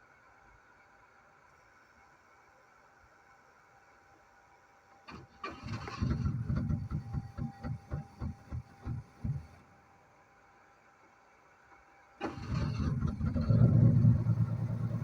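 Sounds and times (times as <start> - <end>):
starter motor cranking engine: 5.4 - 7.2, 12.2 - 15.0.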